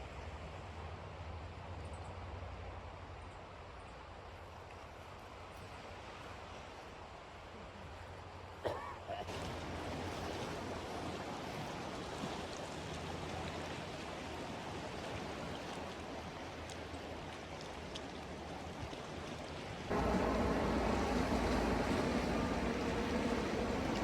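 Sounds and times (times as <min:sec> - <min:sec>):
small waves washing on shore: 0:09.3 - 0:24.0
low steady humming: 0:19.9 - 0:24.0.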